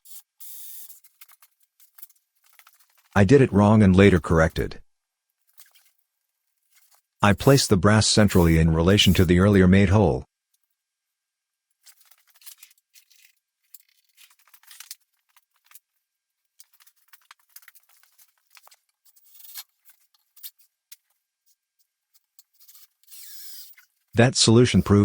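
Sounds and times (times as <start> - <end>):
metal parts clicking and scraping: 0.0 - 3.2, 5.4 - 7.1, 11.8 - 24.1.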